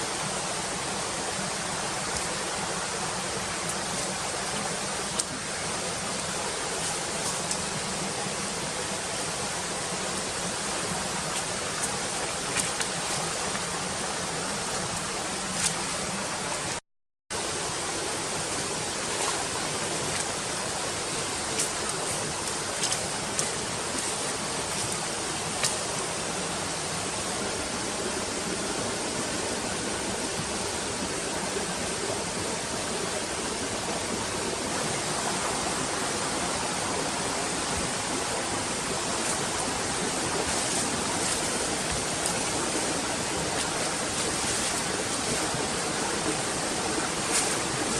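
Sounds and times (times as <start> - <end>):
flowing water rushing: 0.0 - 47.9.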